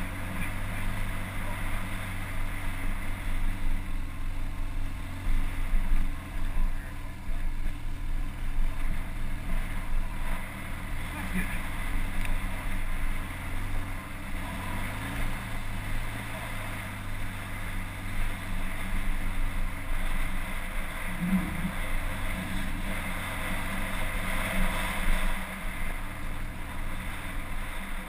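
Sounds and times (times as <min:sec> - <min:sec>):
off-road vehicle engine running: 0:00.0 - 0:28.0.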